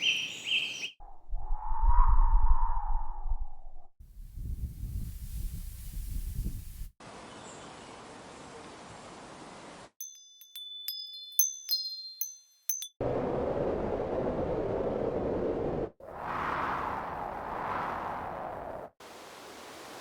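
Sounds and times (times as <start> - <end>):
wind rushing: 1.0 - 6.9, 13.0 - 19.0
wind chimes ringing: 10.0 - 13.0.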